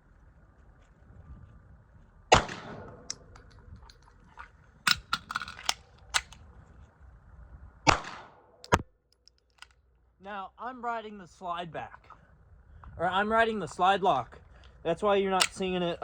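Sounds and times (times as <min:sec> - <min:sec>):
pistol shots: 0:02.3 - 0:03.3, 0:07.9 - 0:08.8
gun handling clicks and clacks: 0:02.8 - 0:06.5, 0:08.6 - 0:09.9, 0:15.4 - 0:15.7.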